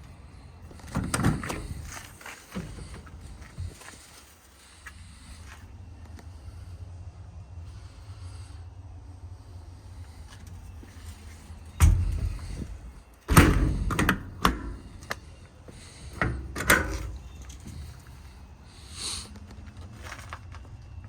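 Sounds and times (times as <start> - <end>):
metal doors thudding: 0.7 - 3.8, 11.8 - 15.2, 15.8 - 17.9
metal door latch clicks: 0.9 - 1.9, 11.8 - 15.2, 16.1 - 17.3.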